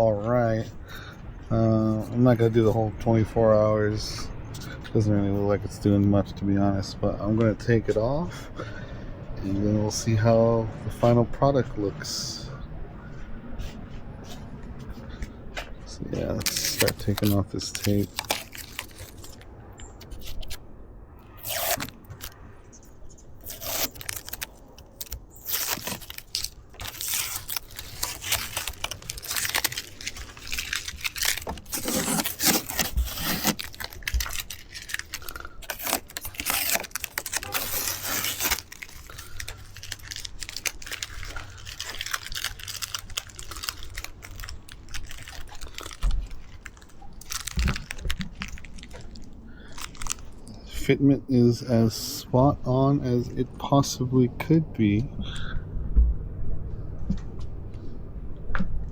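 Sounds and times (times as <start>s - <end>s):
tape ripping off car paint: 16.2s - 19.4s, 21.3s - 22.4s, 23.3s - 49.2s.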